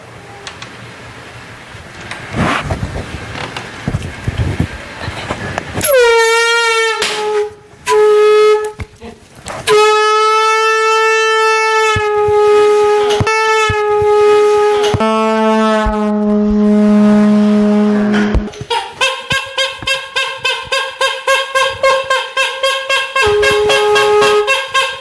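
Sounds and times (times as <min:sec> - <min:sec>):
lower horn: 0:05.8 - 0:08.8, 0:09.6 - 0:25.0
noisemaker horn blasts: 0:05.8 - 0:08.9, 0:09.6 - 0:25.0.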